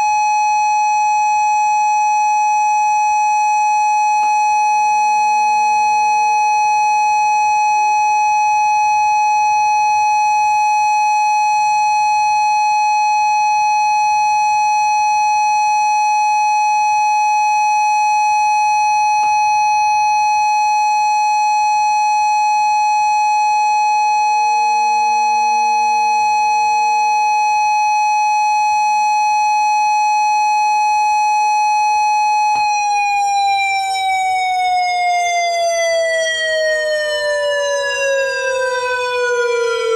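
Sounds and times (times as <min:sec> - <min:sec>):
loud warning siren steady tone: 0:00.0 - 0:39.9
distant warning sirens: 0:31.9 - 0:39.9.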